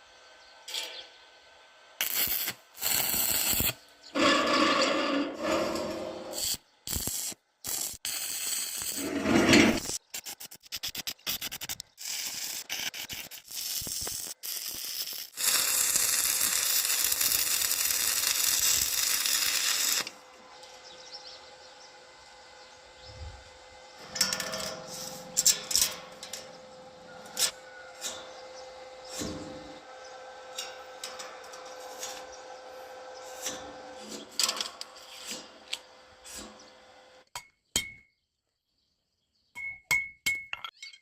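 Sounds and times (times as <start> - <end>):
loud hissing: 11.3 - 20.1.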